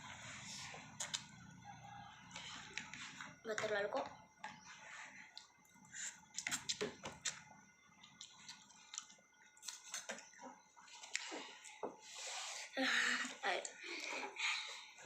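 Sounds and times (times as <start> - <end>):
chewing and slurping noodles: 8.0 - 12.6.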